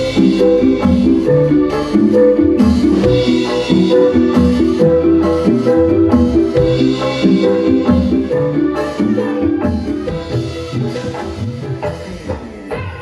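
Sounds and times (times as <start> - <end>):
melodic tune over percussion: 0.0 - 12.8.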